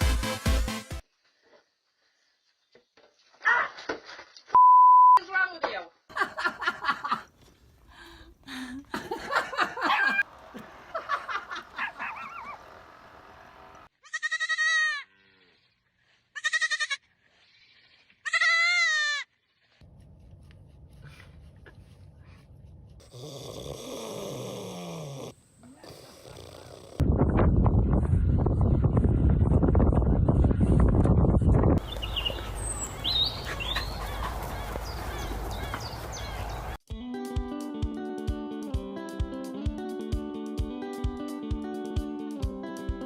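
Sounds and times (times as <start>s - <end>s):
livestock bleating: 14.0s - 15.6s, 16.3s - 17.1s, 18.2s - 19.3s.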